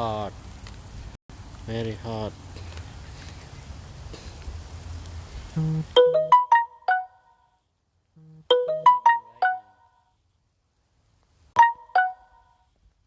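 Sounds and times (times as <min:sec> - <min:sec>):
steady rain: 0:00.0 - 0:05.9
phone ringtone melody: 0:05.6 - 0:07.4, 0:08.2 - 0:10.0, 0:11.6 - 0:12.6.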